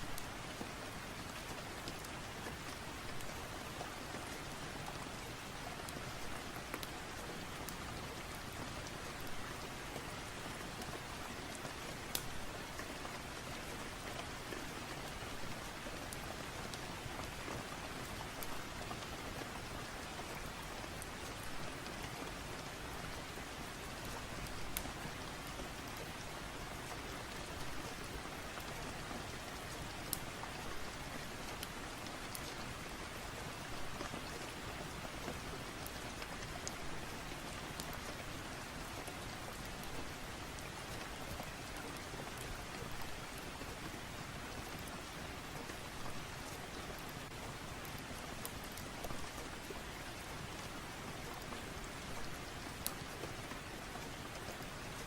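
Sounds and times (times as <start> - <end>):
steady rain hiss: 0.0 - 55.0
wood fire crackling: 51.8 - 53.4.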